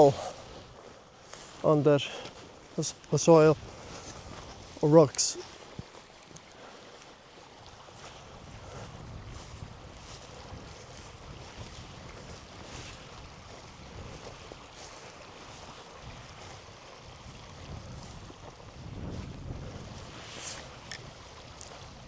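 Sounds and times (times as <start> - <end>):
wind buffeting microphone: 2.4 - 6.5, 7.3 - 22.0.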